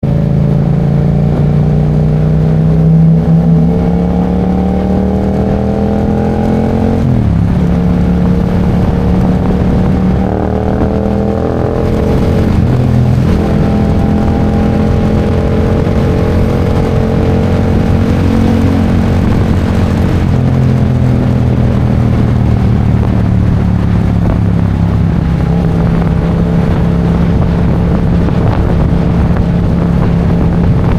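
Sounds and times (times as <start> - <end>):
motorcycle engine accelerating: 0.0 - 30.9.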